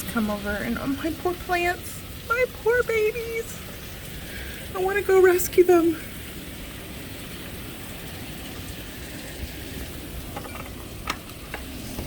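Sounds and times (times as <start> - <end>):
rain: 0.0 - 12.0.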